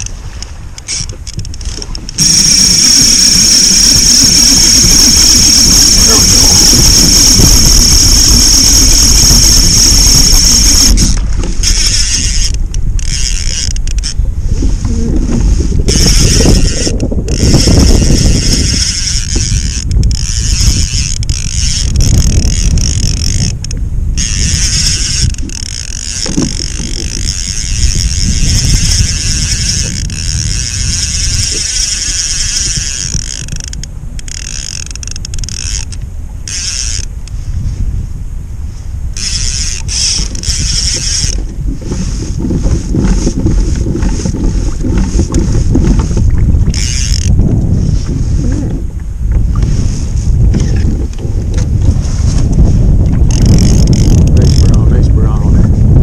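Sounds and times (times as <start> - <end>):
wind buffeting microphone: 0.0 - 56.0.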